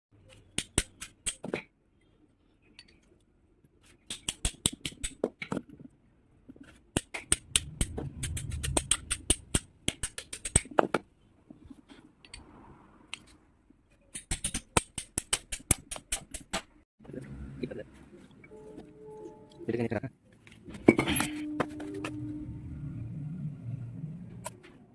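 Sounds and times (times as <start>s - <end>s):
sharp metallic clicks and taps: 0.3s - 1.6s, 3.9s - 5.6s, 6.9s - 11.0s, 14.0s - 16.8s
low rumble: 7.4s - 9.8s, 21.6s - 24.5s.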